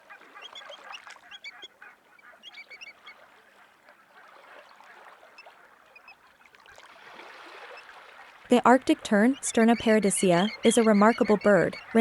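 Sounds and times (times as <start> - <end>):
flock of birds calling: 8.6 - 12.0.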